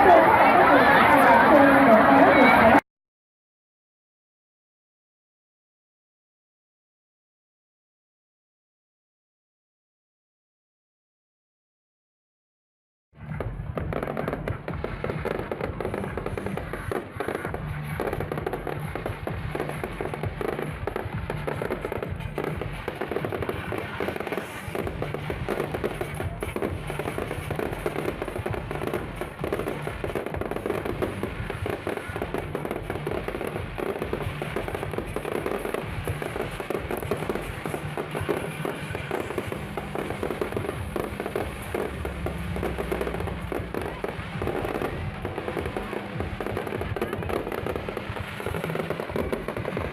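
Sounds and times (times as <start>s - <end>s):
music playing: 0.0s - 2.8s, 13.2s - 49.9s
fireworks bangs and crackles: 13.2s - 49.9s.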